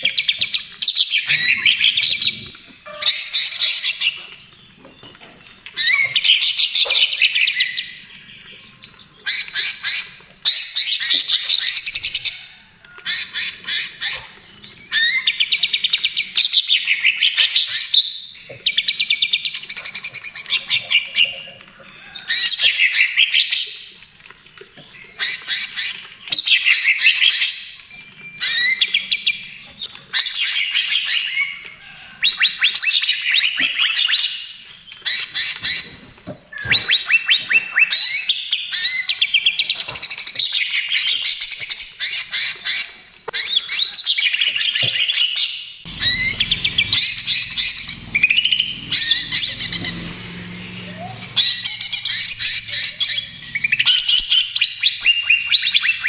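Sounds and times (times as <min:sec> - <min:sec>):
bird singing rapid chattering notes: 0:45.9 - 0:56.0.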